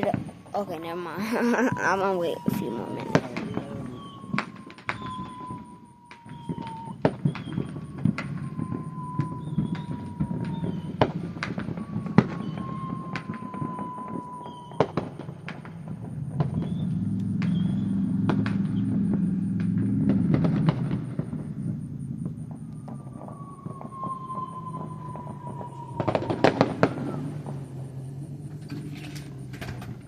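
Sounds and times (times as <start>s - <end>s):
fireworks bangs and pops: 0.0s - 30.0s
low rumble: 0.1s - 29.7s
faint falling tone: 1.3s - 15.2s, 22.2s - 28.2s.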